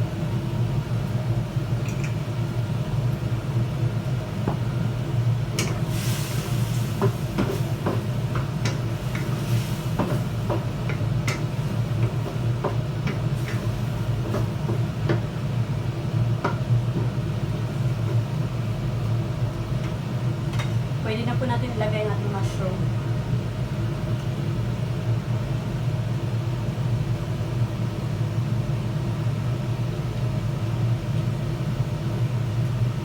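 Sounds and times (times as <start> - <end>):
steady low hum: 0.0 - 33.0
sizzling hiss: 5.6 - 12.4
utensil tapping against pan: 7.0 - 9.4, 10.0 - 13.6.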